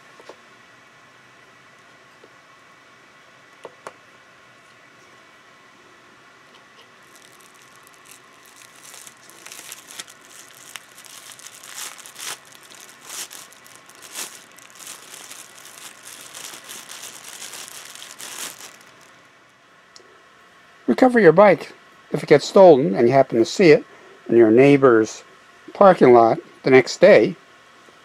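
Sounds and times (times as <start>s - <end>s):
crinkling and rustling: 6.8s - 19.2s
sharp crackles: 7.0s - 19.2s.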